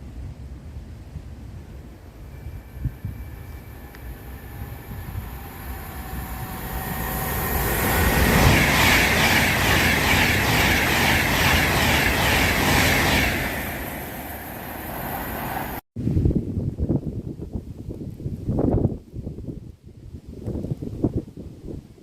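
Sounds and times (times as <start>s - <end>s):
train wheels clattering: 6.3s - 14.1s.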